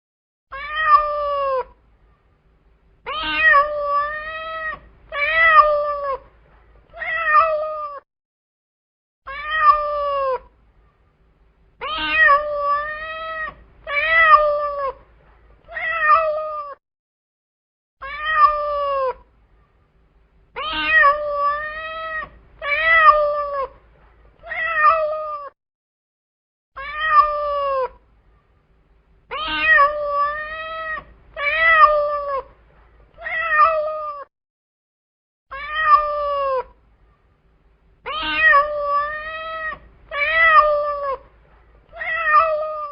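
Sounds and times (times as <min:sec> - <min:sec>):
cat meowing: 0:00.5 - 0:01.8, 0:03.1 - 0:06.3, 0:06.9 - 0:08.0, 0:09.3 - 0:10.5, 0:11.8 - 0:15.0, 0:15.6 - 0:16.8, 0:18.0 - 0:19.3, 0:20.6 - 0:23.8, 0:24.4 - 0:25.6, 0:26.8 - 0:28.0, 0:29.3 - 0:32.6, 0:33.2 - 0:34.3, 0:35.5 - 0:36.8, 0:38.0 - 0:41.3, 0:41.9 - 0:42.9.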